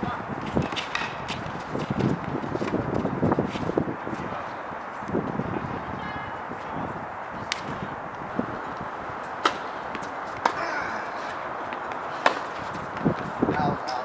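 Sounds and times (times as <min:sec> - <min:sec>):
background noise: 0:00.0 - 0:14.0
tennis ball racket pops: 0:07.5 - 0:07.7, 0:11.7 - 0:12.6.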